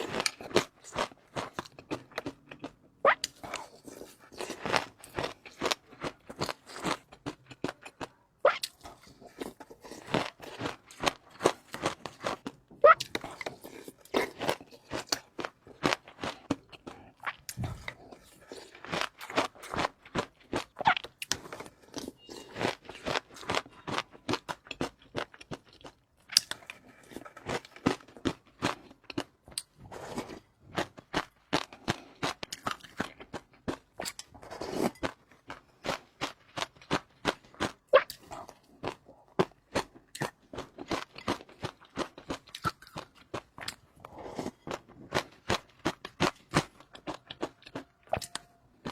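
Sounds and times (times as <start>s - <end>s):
crunchy chewing: 0.0s - 48.9s.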